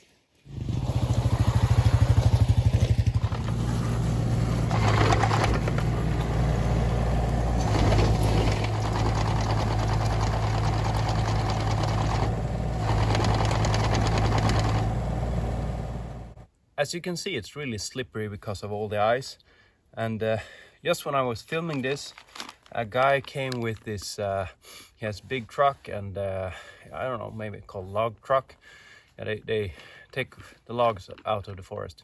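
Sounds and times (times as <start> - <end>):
small vehicle engine running: 0.5 - 16.4.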